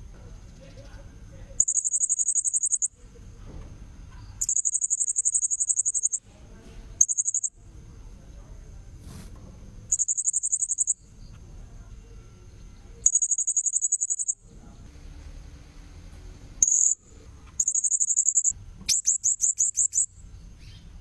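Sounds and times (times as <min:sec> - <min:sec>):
parrot high buzzing trill: 0:01.6 - 0:02.9, 0:04.4 - 0:06.2, 0:07.0 - 0:07.5, 0:09.9 - 0:11.0, 0:13.1 - 0:14.4, 0:16.6 - 0:17.0, 0:17.6 - 0:20.1
faint high whine: 0:09.8 - 0:20.4.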